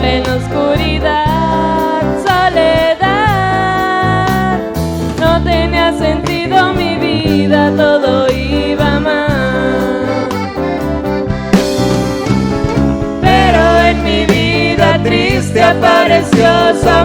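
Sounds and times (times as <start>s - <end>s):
accordion melody: 0.0s - 17.0s
bass guitar: 0.0s - 17.0s
strummed guitar chords: 8.6s - 17.0s.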